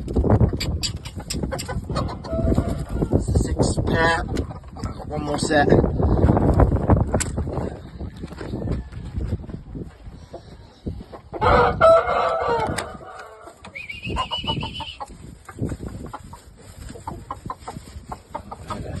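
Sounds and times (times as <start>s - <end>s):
rooster crowing: 2.2s - 3.1s, 11.4s - 13.5s.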